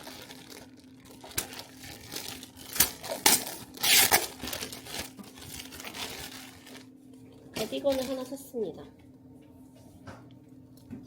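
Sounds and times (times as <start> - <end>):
packaging crinkling and rustling: 0.0 - 8.5.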